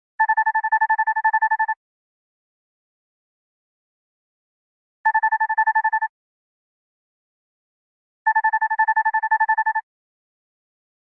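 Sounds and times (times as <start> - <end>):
rapid pulsing alarm beep: 0.2 - 1.8, 5.1 - 6.1, 8.3 - 9.9.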